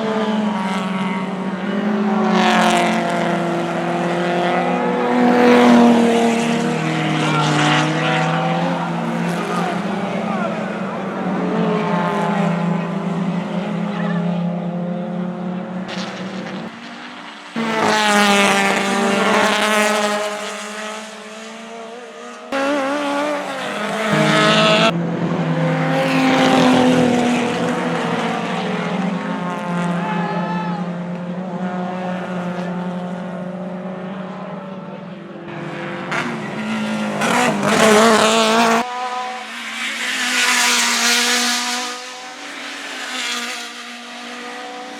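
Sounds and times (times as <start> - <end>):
racing car engines passing: 0.0 - 44.9.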